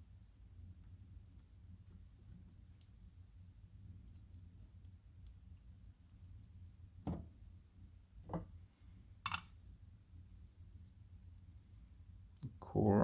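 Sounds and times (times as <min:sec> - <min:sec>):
low steady hum: 0:00.0 - 0:13.0
metal lock parts clicking: 0:09.2 - 0:09.5.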